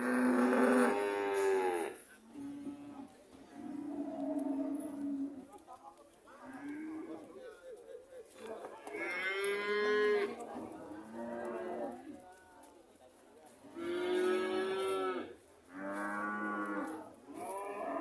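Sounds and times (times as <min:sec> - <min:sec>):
cattle mooing: 0:00.0 - 0:02.6.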